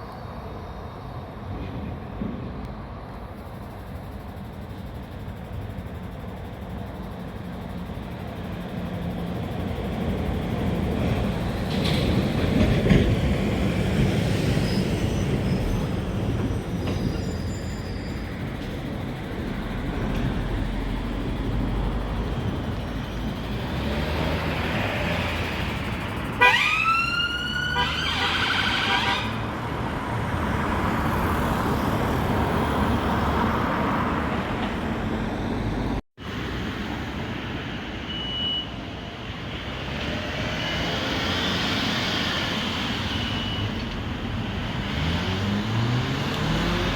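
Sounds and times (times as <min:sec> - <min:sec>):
road traffic engine noise: 0:00.0 - 0:46.9
police siren rising tone: 0:23.5 - 0:29.2.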